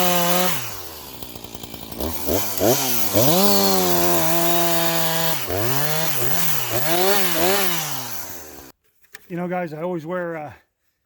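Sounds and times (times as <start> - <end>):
chainsaw revving: 0.0 - 8.7.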